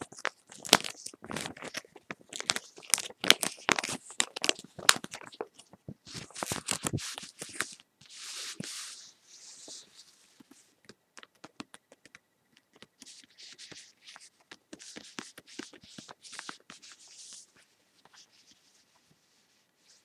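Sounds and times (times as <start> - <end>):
hissy rustling or scratching: 0.0 - 20.0
small clicks and taps: 10.4 - 13.7.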